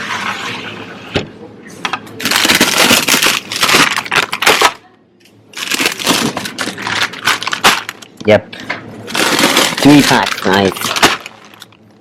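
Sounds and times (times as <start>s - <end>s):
plastic packaging crinkling: 2.2s - 4.9s, 5.5s - 8.2s, 9.0s - 12.0s.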